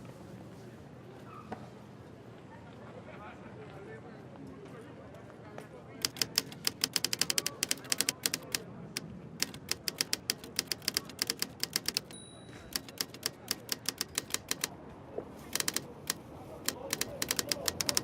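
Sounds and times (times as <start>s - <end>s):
low street hubbub: 0.0s - 18.0s
typewriter keys striking: 6.0s - 8.6s, 9.4s - 14.7s, 15.5s - 18.0s.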